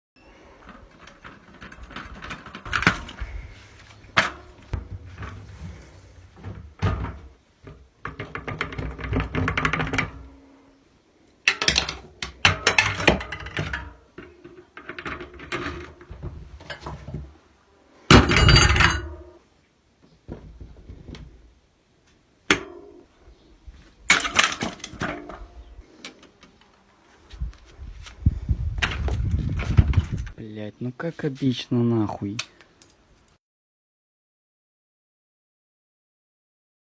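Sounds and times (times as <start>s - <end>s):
metallic clanks of tools on bicycle: 11.5s - 17.0s, 24.1s - 26.2s.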